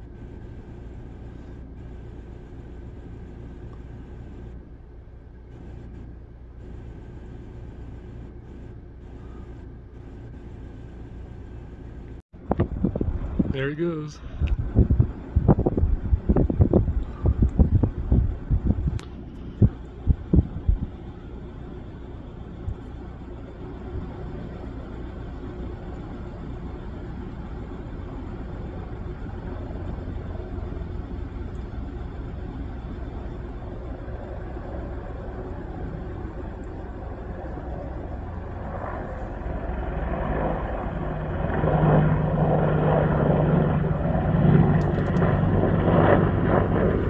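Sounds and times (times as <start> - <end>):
faint high whine: 0.0 - 16.2, 18.1 - 44.2
engine rumble: 0.0 - 47.0.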